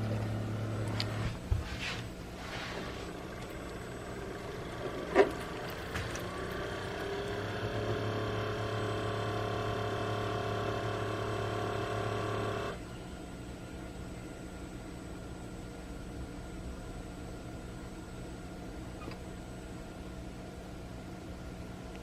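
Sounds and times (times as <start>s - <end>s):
coffee maker pump humming: 0.0s - 13.2s.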